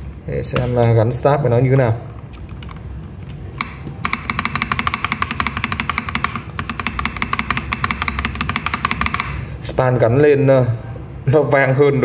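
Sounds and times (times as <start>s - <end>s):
mechanical keyboard key tapping: 3.6s - 9.4s.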